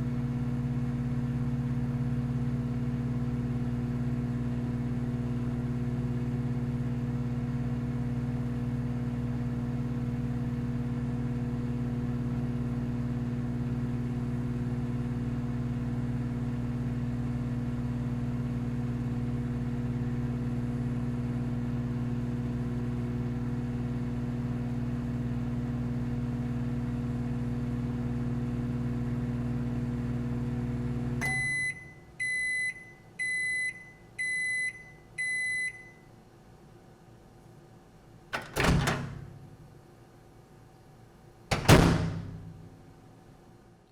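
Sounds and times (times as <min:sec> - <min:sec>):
microwave oven humming: 0:00.0 - 0:43.9
short high-pitched beeps: 0:31.2 - 0:36.0.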